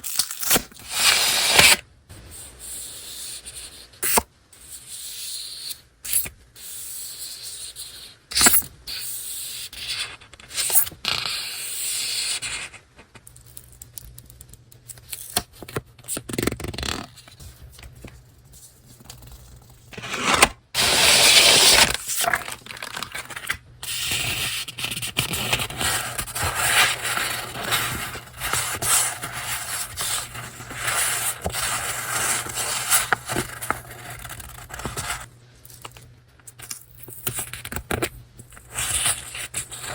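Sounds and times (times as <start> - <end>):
paper packaging rustling: 18.9 - 35.3
paper sheets sliding and scraping: 19.9 - 35.3.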